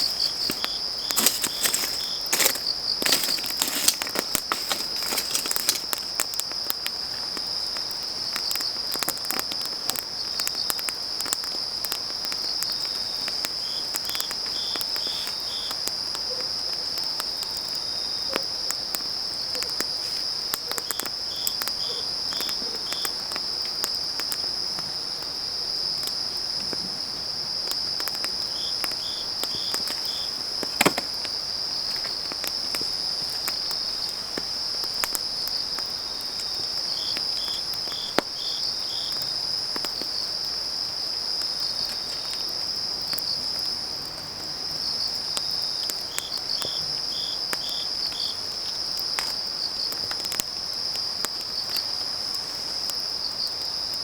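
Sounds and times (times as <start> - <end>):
insect chirping in short groups: 0.0 - 6.5
firewood crackling and popping: 0.0 - 43.7, 47.4 - 54.0
insects trilling: 0.0 - 54.0.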